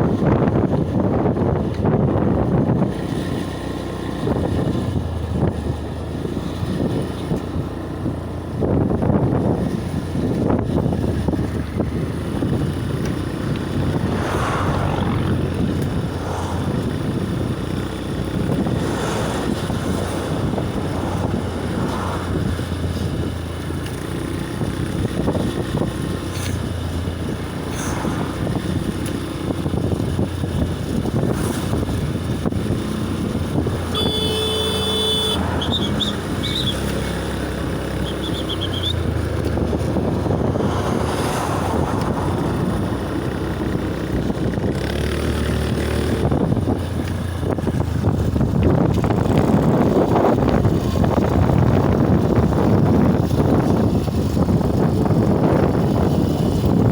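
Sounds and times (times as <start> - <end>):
road traffic noise: 0.0 - 56.9
vehicle horn toot: 33.9 - 36.8.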